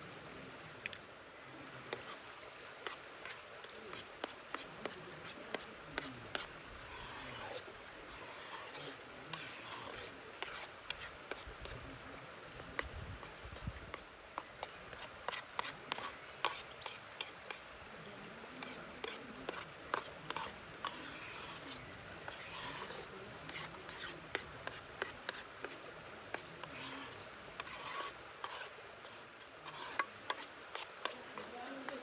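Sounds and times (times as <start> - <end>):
utensil scraping cookware: 2.8 - 11.8, 18.6 - 25.8, 26.4 - 32.0.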